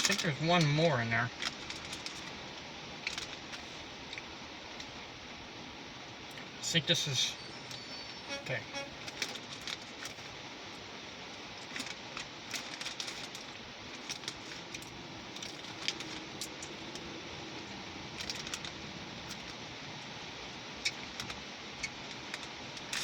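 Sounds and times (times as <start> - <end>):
plastic packaging crinkling: 0.0 - 4.2, 7.4 - 10.4, 11.3 - 19.7
steady hiss: 0.0 - 23.0.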